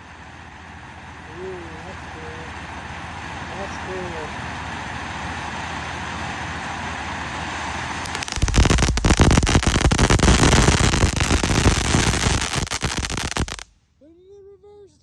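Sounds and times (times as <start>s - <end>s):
firework fountain hissing and crackling: 5.1s - 13.7s.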